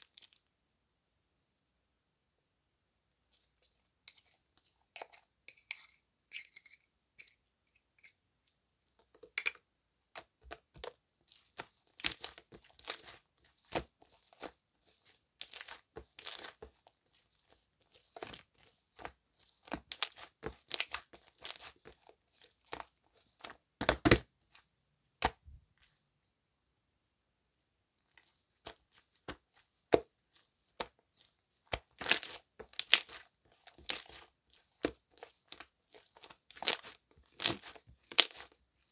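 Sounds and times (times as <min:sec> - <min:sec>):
squishy toy crackling and squelching: 0:11.5 - 0:16.8, 0:30.8 - 0:38.6.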